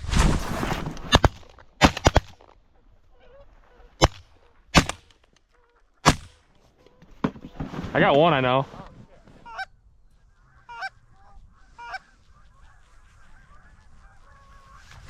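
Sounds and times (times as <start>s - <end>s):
shotgun shots: 1.0s - 2.4s, 4.0s - 5.1s, 6.0s - 6.4s
faint geese honking: 2.6s - 4.7s, 5.4s - 15.0s.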